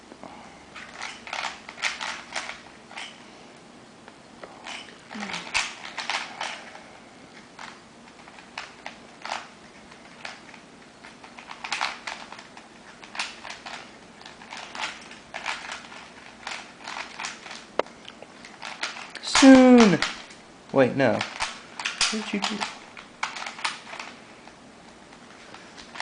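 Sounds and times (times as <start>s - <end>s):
puzzle cube clicking: 11.3s - 17.7s, 21.1s - 24.1s.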